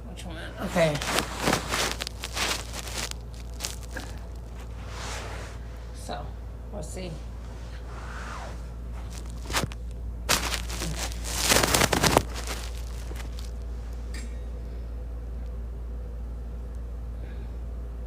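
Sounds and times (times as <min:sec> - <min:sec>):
low steady hum: 0:00.0 - 0:18.0
packaging rustling and rattling: 0:00.8 - 0:04.5, 0:09.0 - 0:13.6.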